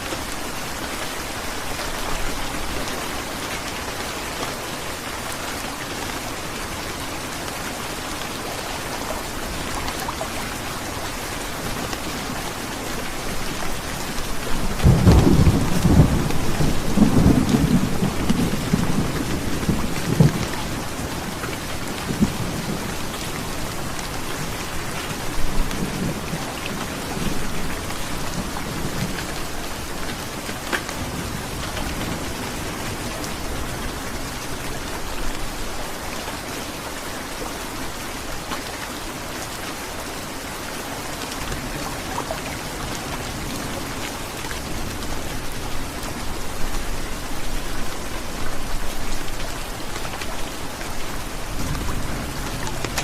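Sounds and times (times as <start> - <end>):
heavy rain falling: 0.0 - 53.0
thunder rumbling: 14.4 - 23.8.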